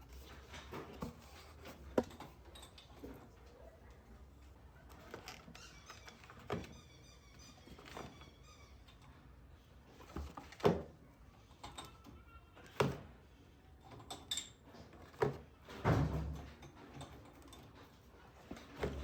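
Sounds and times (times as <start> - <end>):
kitchen things knocking and thudding: 14.1 - 17.8.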